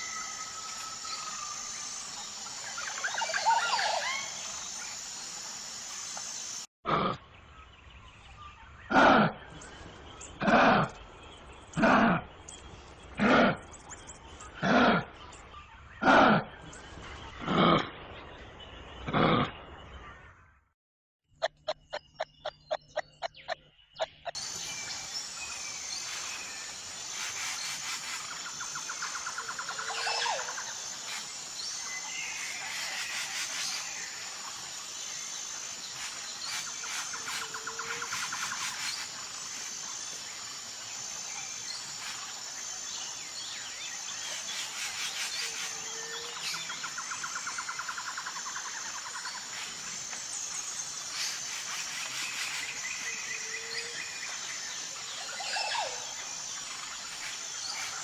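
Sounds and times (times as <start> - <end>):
insects trilling: 0.0 - 6.7, 21.4 - 58.0
birds calling and chirping: 0.0 - 20.6, 21.3 - 58.0.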